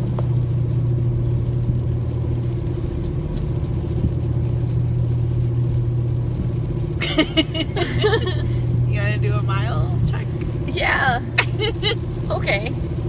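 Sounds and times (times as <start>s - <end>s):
car cabin engine and road hum: 0.0s - 13.0s.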